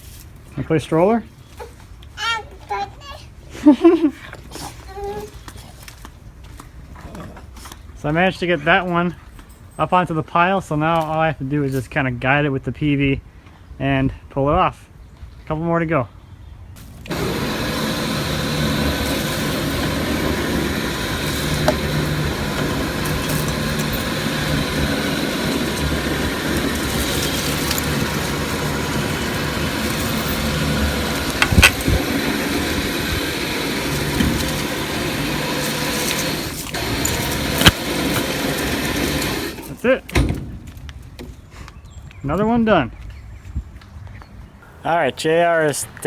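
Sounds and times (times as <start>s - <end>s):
electric winch motor running: 17.1s - 39.8s.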